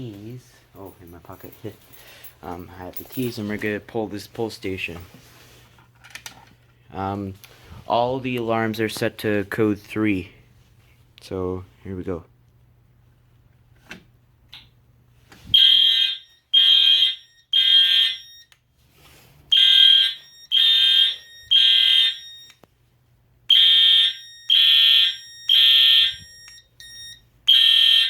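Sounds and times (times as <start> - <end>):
fire alarm horn beeps: 15.5 - 18.6, 19.5 - 22.7, 23.5 - 28.0.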